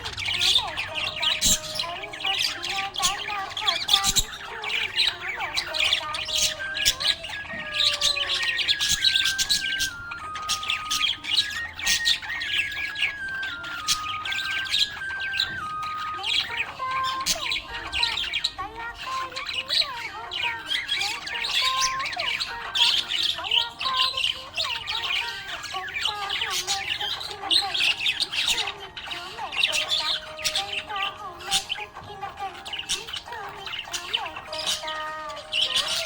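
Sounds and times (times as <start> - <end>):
melody of held notes: 0.0 - 18.6
budgerigar chirping: 0.0 - 36.0.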